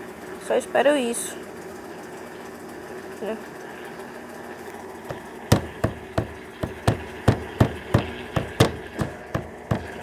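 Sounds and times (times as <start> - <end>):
washing machine motor hum: 1.5 - 10.0
washing machine drum knocking: 5.1 - 10.0.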